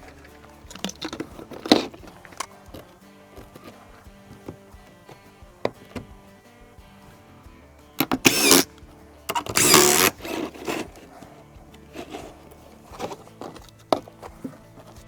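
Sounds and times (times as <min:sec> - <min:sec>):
background music: 0:00.0 - 0:15.0
screw gun driving screws into wood: 0:08.0 - 0:08.7, 0:09.3 - 0:10.9.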